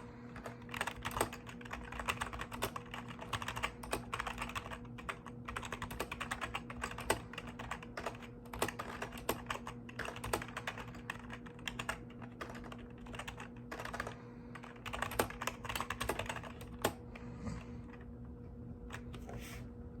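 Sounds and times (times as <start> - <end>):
mechanical keyboard typing: 0.0 - 17.0
faint steady hum: 0.0 - 20.0.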